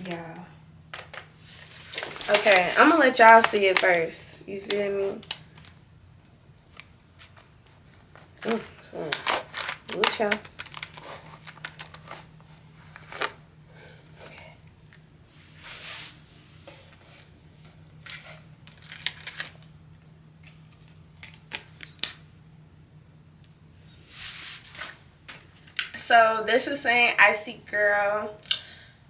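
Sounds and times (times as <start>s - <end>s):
box rustling: 1.0s - 4.1s, 7.2s - 13.4s
packaging clicks: 8.1s - 13.4s, 18.1s - 19.7s.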